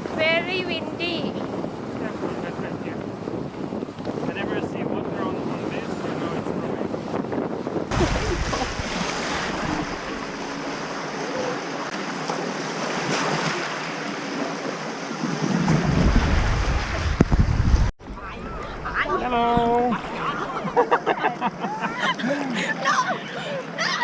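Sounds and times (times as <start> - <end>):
wind buffeting microphone: 0.0 - 10.8, 15.2 - 20.8
rushing sea water: 0.0 - 24.0.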